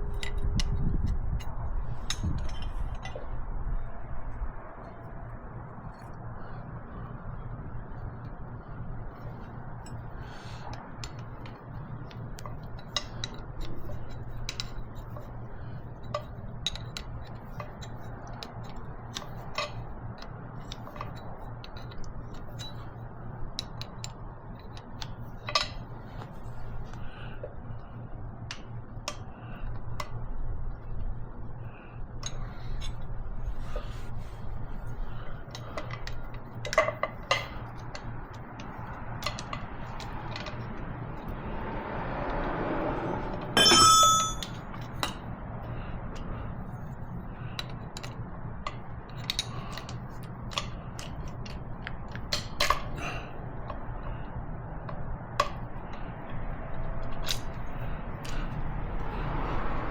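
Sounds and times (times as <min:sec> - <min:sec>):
ringing metallic clank: 0:43.6 - 0:44.6
tools clinking on metal: 0:43.6 - 0:45.2.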